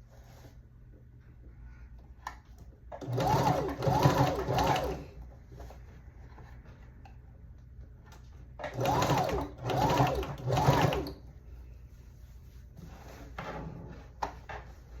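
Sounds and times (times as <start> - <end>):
sewing machine running: 3.0 - 5.1, 8.6 - 11.2.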